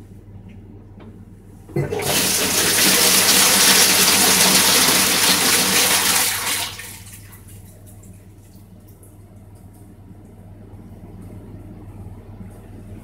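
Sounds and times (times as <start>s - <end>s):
low steady hum: 0.0s - 13.0s
toilet flushing: 1.7s - 8.0s.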